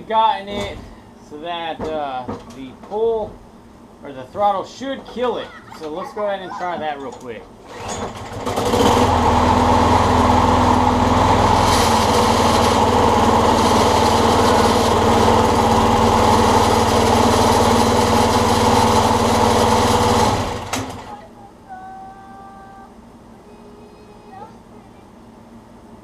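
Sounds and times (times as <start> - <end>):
lawn mower engine running: 7.6 - 21.2.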